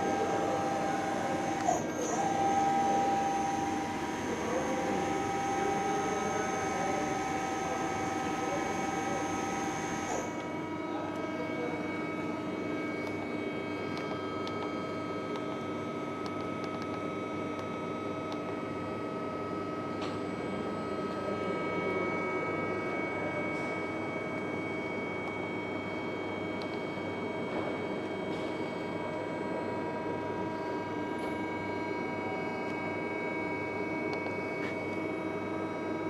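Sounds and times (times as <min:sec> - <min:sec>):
high machine tone: 0:00.0 - 0:10.4
machine whine and hum: 0:00.0 - 0:36.0.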